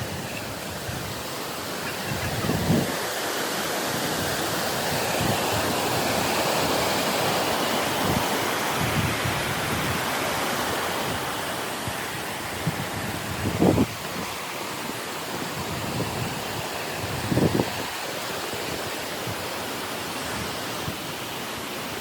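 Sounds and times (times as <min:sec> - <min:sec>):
waterfall rushing: 0:00.0 - 0:22.0.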